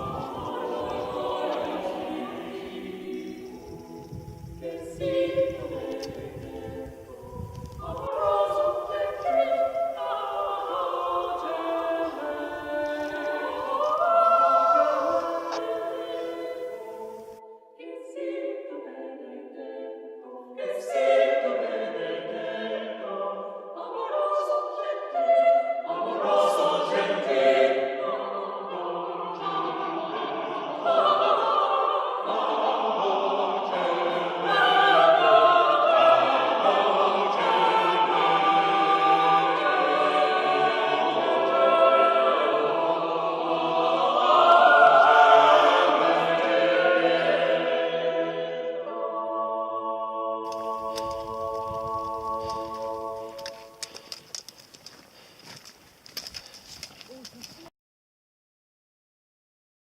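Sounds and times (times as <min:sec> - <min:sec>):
choir singing in harmony: 0:00.0 - 0:54.2.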